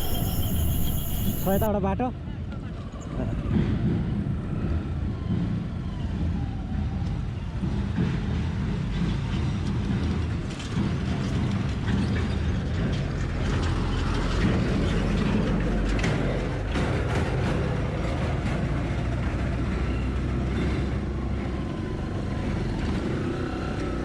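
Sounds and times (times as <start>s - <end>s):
vehicle engine rumbling: 0.0s - 1.7s.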